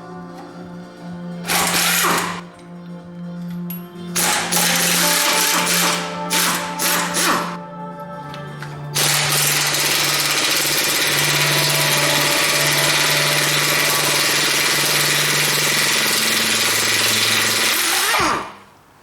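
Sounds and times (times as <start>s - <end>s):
loud machine running: 1.4s - 2.6s, 4.2s - 7.6s, 8.6s - 18.6s.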